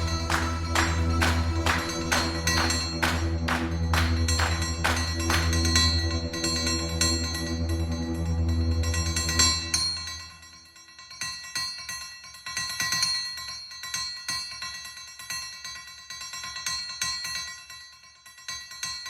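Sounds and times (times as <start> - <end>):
low drone: 0.0 - 10.4.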